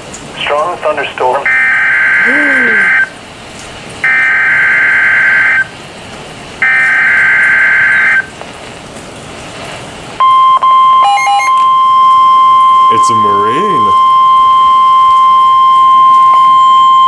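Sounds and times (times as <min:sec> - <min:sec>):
steady warning alarm tone: 0:01.4 - 0:03.1, 0:04.0 - 0:05.8, 0:06.6 - 0:08.3, 0:10.2 - 0:17.0
screechy digital data bursts: 0:06.6 - 0:08.3.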